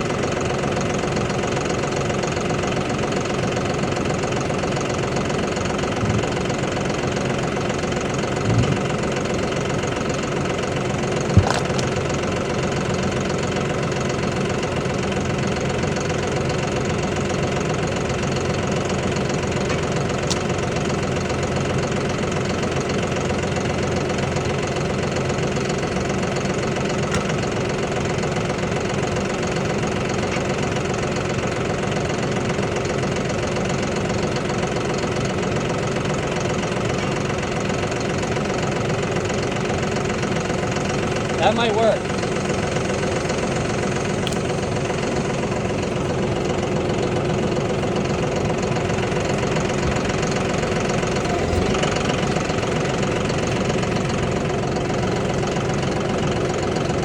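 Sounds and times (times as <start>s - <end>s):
engine idling: 0.0s - 57.0s
short sharp knocks: 11.3s - 12.0s.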